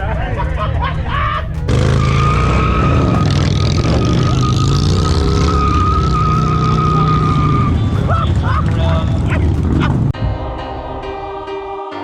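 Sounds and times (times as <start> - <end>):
high-pitched squeal: 1.7 - 9.3
engine running at high revs: 1.7 - 10.2.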